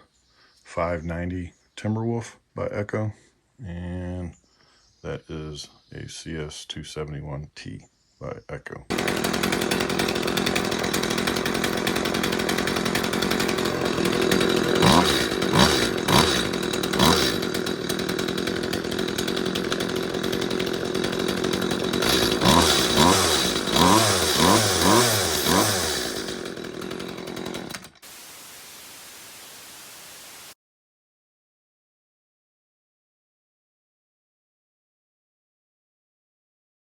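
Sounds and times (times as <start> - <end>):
chainsaw idling and revving: 8.9 - 28.2.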